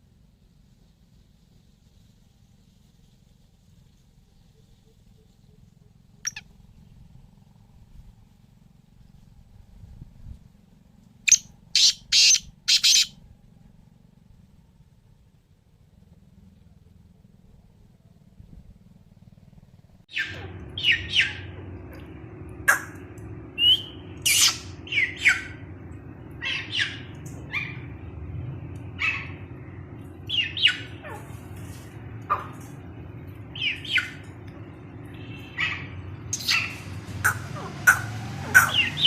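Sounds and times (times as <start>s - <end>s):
low hum: 0.0s - 39.0s
birds calling: 4.5s - 7.1s, 11.3s - 13.2s, 20.1s - 39.0s.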